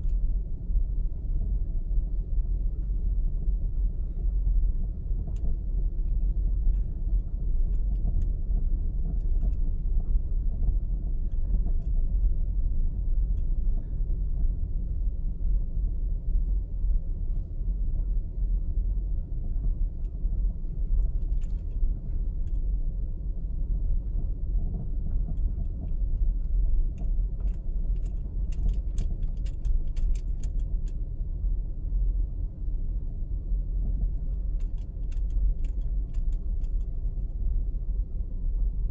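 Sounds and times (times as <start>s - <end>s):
road and tyre rumble: 0.0s - 38.9s.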